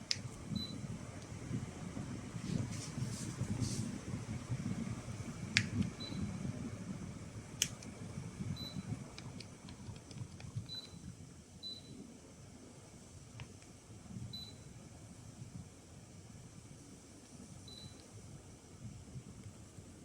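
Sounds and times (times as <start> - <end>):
low uneven rumble: 0.2 - 11.3
air conditioner short high beeps: 0.5 - 1.0, 6.0 - 6.4, 8.5 - 9.0, 10.7 - 12.0, 14.3 - 14.7, 17.6 - 18.0.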